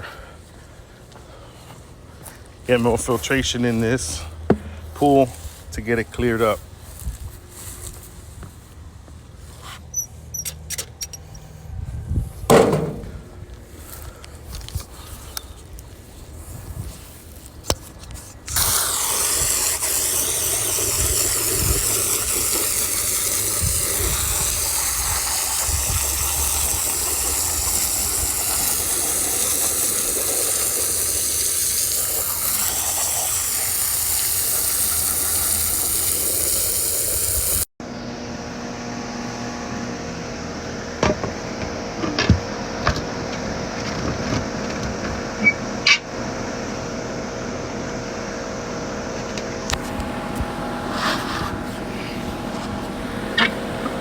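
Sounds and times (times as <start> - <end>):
mechanical hum: 0.0 - 54.0
water spraying from a hose: 18.5 - 37.7.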